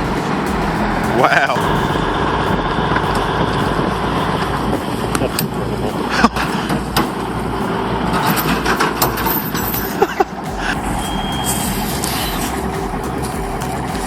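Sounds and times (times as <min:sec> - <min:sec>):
truck diesel engine running: 0:00.0 - 0:14.0
brief high beep: 0:09.6 - 0:13.0.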